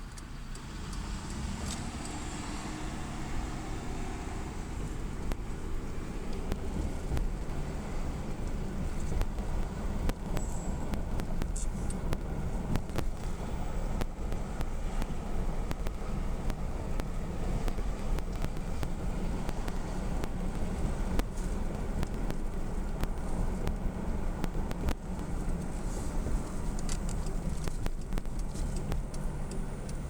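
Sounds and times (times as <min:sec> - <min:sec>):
car engine and road rumble: 0:00.0 - 0:30.0
faint clicks: 0:06.2 - 0:30.0.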